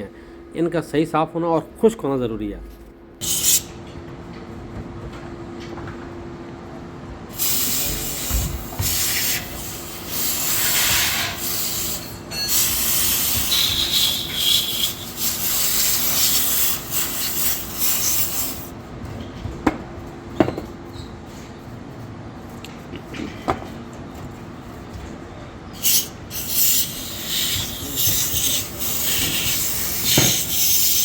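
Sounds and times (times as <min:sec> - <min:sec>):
aerosol spray hissing: 0:03.2 - 0:03.7, 0:07.4 - 0:18.7, 0:25.8 - 0:31.0.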